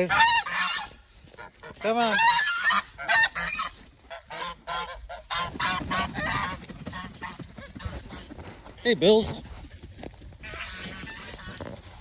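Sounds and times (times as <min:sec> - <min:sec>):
geese honking: 0:00.0 - 0:07.9, 0:10.4 - 0:11.8.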